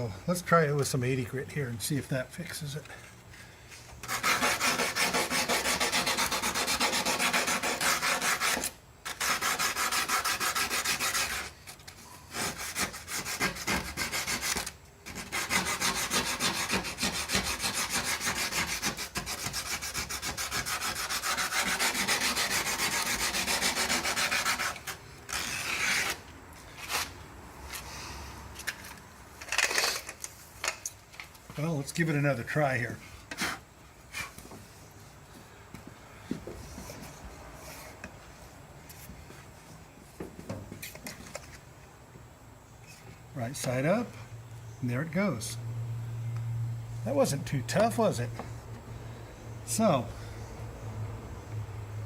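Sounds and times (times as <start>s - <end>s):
sandpaper rubbing fiberglass: 4.0s - 11.6s, 12.3s - 26.2s.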